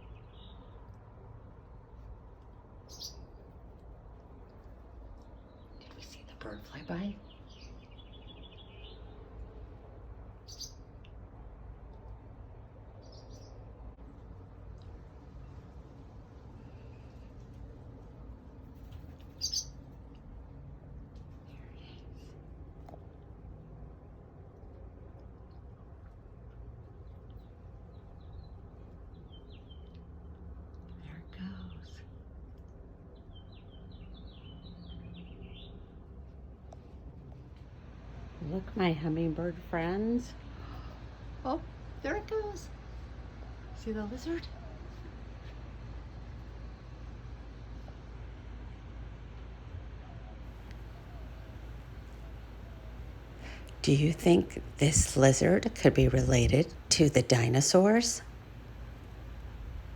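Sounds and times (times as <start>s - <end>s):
small birds chirping: 0.0s - 1.7s, 2.7s - 3.8s, 4.4s - 11.2s, 12.8s - 13.7s, 18.7s - 20.2s, 26.9s - 32.3s, 33.1s - 36.0s
low background hum: 0.0s - 59.9s
swallows chirping: 2.9s - 3.4s, 10.4s - 10.9s, 13.0s - 13.6s, 19.2s - 19.8s.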